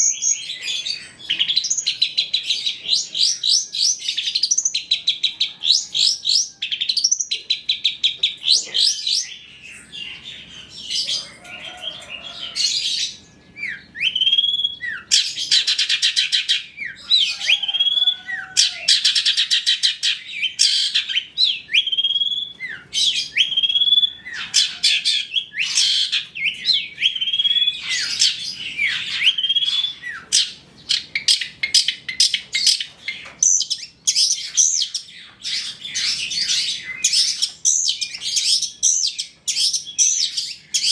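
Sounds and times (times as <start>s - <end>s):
shrike singing trills and whistles: 12.7s - 40.9s.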